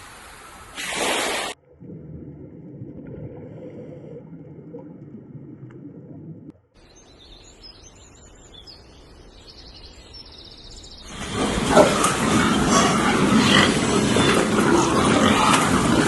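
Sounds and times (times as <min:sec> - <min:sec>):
low steady rumbling: 0:01.6 - 0:06.6
small birds chirping: 0:06.8 - 0:11.3.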